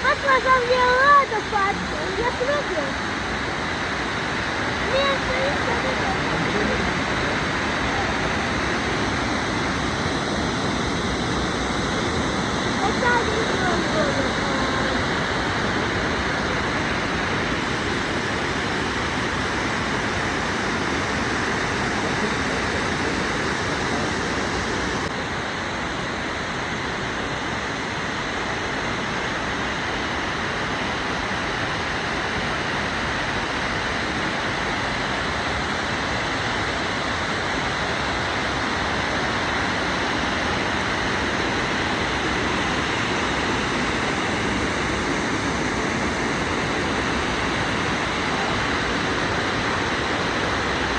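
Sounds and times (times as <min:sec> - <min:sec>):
waterfall roaring: 0:00.0 - 0:50.9.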